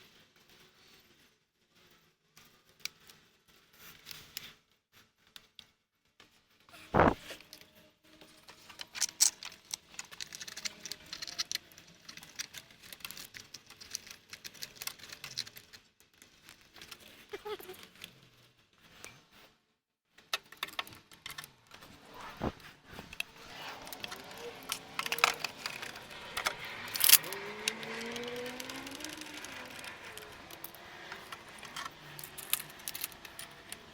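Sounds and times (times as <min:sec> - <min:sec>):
steady noise: 0:07.0 - 0:07.2
metal tools clinking: 0:23.1 - 0:33.9.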